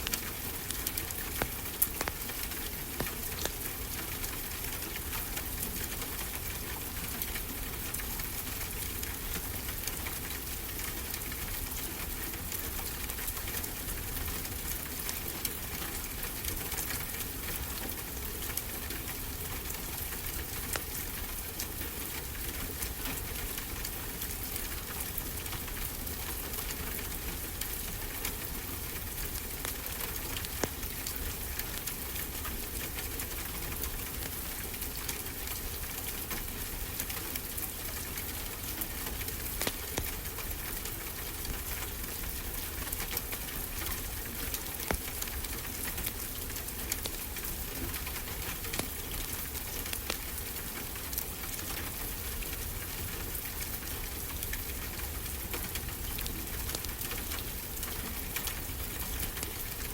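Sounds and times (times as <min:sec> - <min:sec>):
fireplace crackling: 0:39.4 - 0:40.1.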